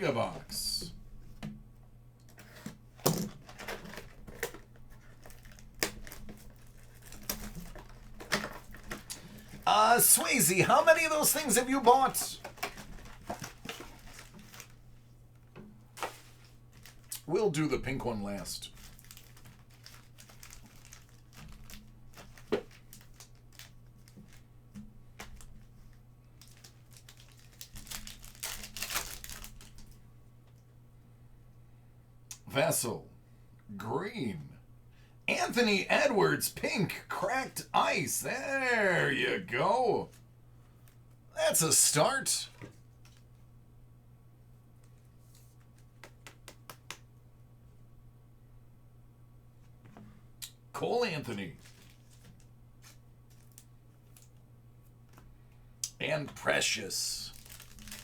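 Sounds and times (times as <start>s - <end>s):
plastic and cardboard crinkling: 2.3s - 30.0s, 51.4s - 54.4s, 57.2s - 58.0s.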